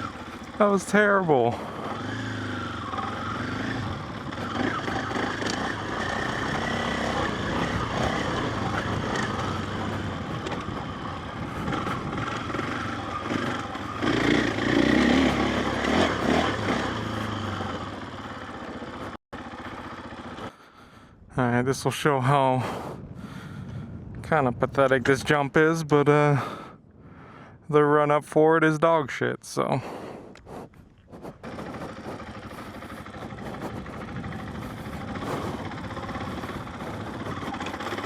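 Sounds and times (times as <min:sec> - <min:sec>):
dirt bike engine revving: 0:00.0 - 0:20.4, 0:31.1 - 0:38.0.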